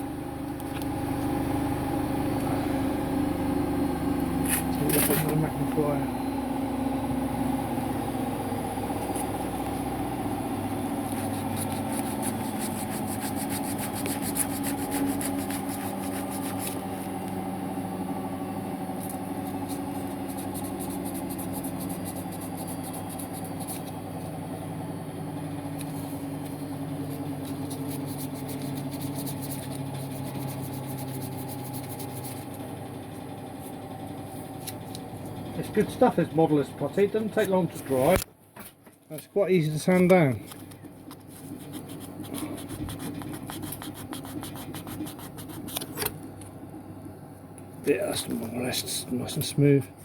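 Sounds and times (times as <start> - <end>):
small electric motor humming: 9.0 - 17.4, 19.0 - 24.3, 25.8 - 32.7
light scratchy rubbing: 11.1 - 16.9, 27.4 - 32.4.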